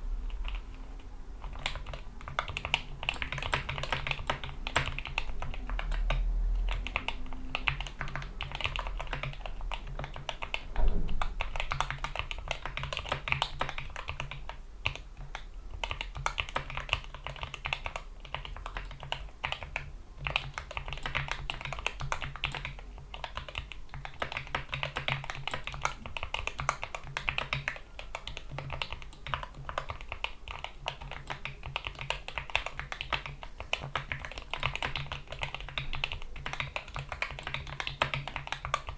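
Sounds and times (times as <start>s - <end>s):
mechanical keyboard typing: 0.2s - 38.9s
loud thump: 10.8s - 11.4s.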